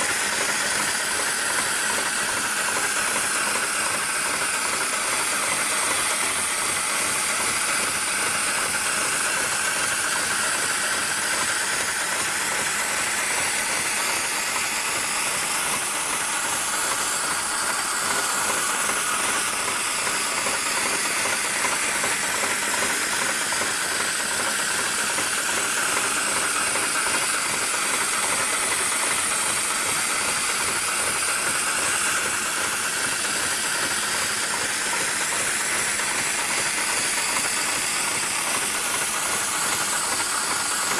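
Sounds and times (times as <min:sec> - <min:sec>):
sewing machine running: 0:00.0 - 0:40.9.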